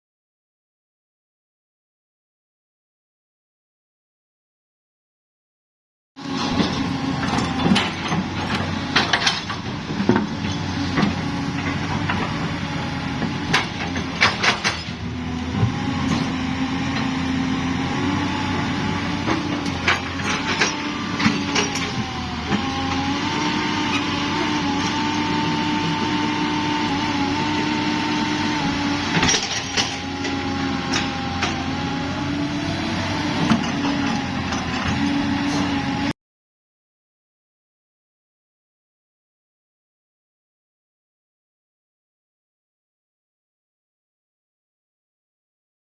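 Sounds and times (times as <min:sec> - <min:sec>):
excavator diesel engine whining: 0:06.2 - 0:36.1.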